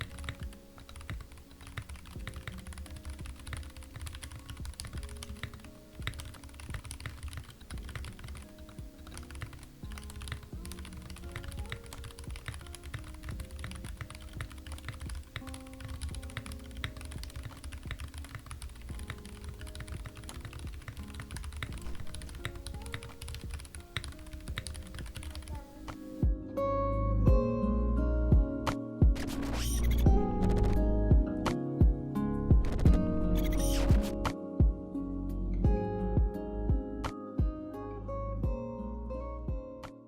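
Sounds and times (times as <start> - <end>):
mechanical keyboard typing: 0.0 - 26.2, 29.2 - 30.8, 32.8 - 34.2
soft background music: 0.0 - 40.0.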